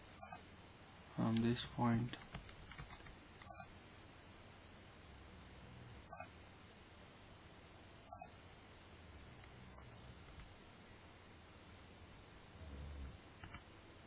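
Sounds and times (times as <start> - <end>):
computer mouse clicks: 0.2 - 0.5, 2.2 - 3.8, 6.0 - 6.4, 8.1 - 8.4, 13.4 - 13.7.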